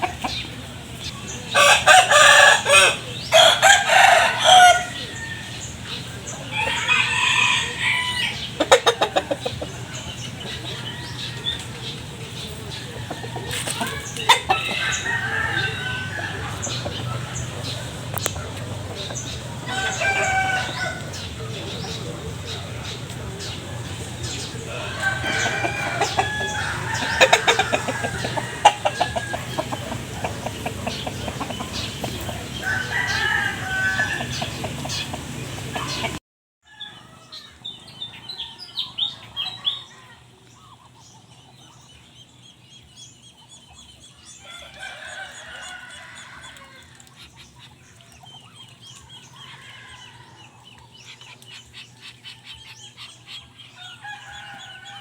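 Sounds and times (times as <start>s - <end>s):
chickens clucking: 0.0s - 36.2s, 37.4s - 55.0s
rooster crowing: 1.5s - 5.6s, 6.5s - 9.2s, 12.7s - 18.6s, 19.5s - 35.1s, 44.4s - 47.0s, 53.8s - 55.0s.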